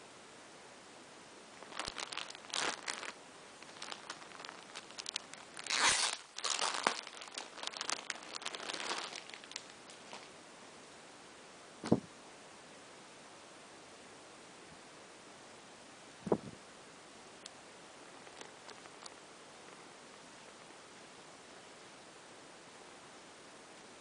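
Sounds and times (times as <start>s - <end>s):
plastic packaging crinkling and tearing: 1.6s - 10.3s, 18.1s - 19.2s.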